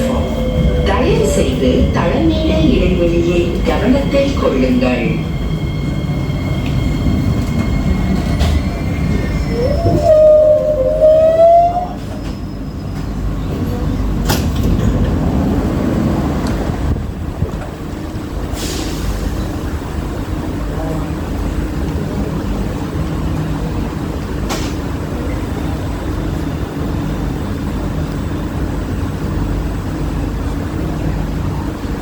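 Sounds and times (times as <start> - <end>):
train squeal: 0.0 - 14.0
train rumble: 0.0 - 32.0.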